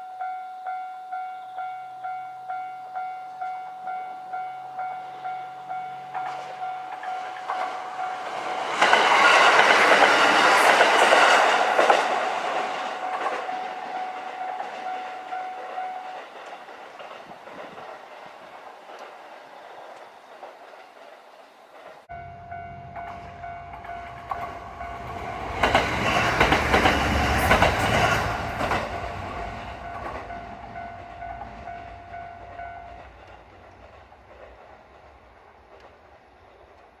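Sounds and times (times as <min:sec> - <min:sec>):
level crossing bell ringing: 0:00.0 - 0:08.6, 0:12.8 - 0:16.6
wheels clattering over rails: 0:06.1 - 0:22.1, 0:23.8 - 0:30.4.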